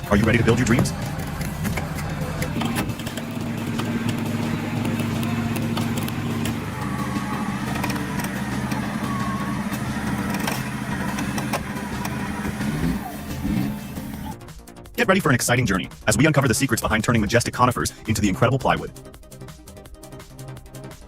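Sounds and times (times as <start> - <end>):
engine droning steadily: 0.0 - 14.4.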